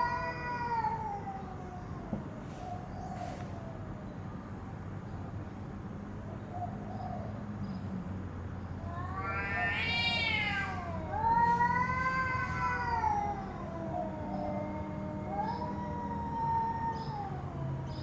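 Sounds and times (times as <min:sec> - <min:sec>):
cat yowling: 0:00.0 - 0:02.1, 0:08.9 - 0:18.0.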